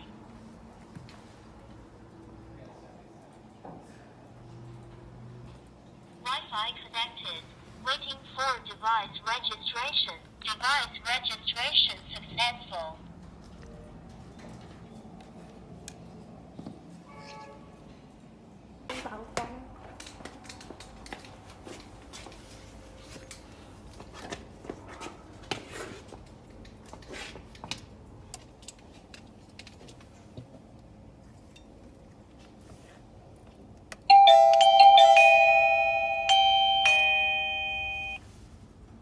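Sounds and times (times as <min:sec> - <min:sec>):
doorbell ding-dong chime: 0:34.1 - 0:38.2.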